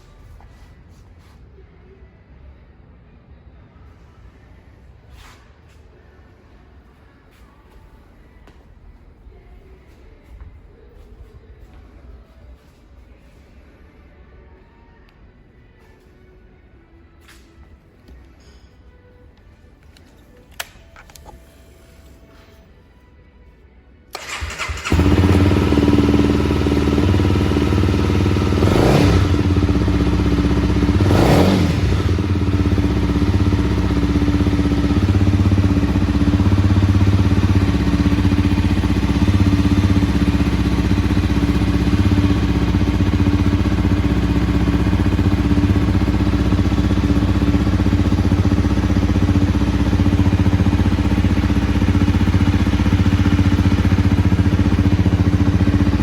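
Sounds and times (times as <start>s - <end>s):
engine starter crank: 24.2s - 25.0s
motorcycle engine idling: 24.2s - 56.0s.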